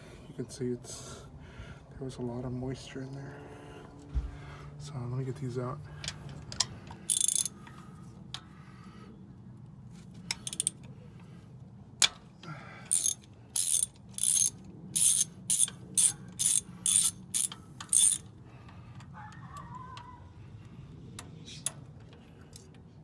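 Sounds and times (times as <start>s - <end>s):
socket ratchet clicking: 7.1s - 7.6s, 10.3s - 10.8s, 12.9s - 18.3s.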